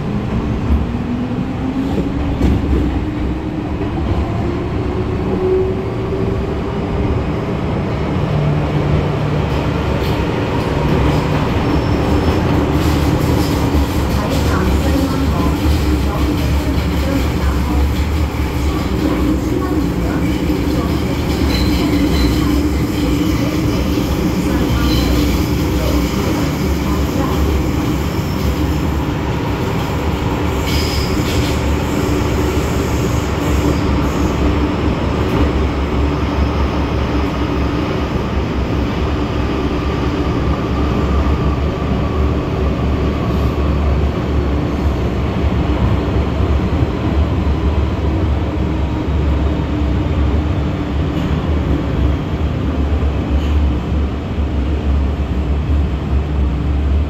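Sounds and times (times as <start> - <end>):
train rumble inside car: 9.5 - 36.1
high wheel squeal: 30.6 - 31.4.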